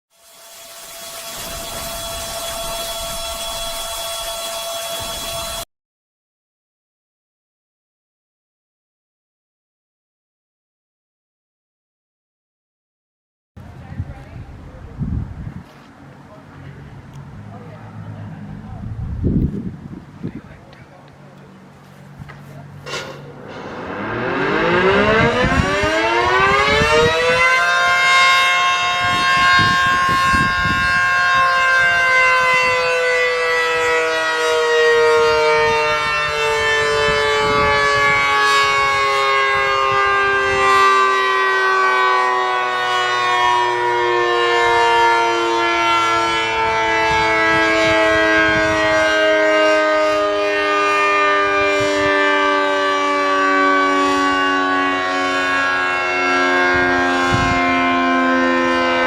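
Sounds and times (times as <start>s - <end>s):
warning siren wailing: 0.2s - 5.7s, 22.6s - 59.0s.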